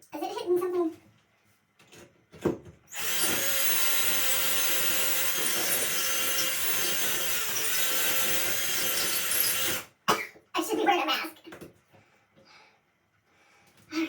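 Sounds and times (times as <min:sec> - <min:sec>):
power drill boring into wall: 0:02.9 - 0:09.9.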